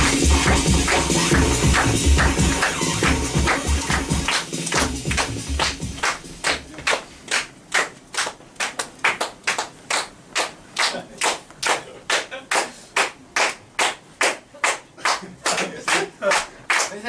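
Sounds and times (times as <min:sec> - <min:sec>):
electronic music: 0:00.0 - 0:06.1
hands clapping in rhythm: 0:00.0 - 0:17.0.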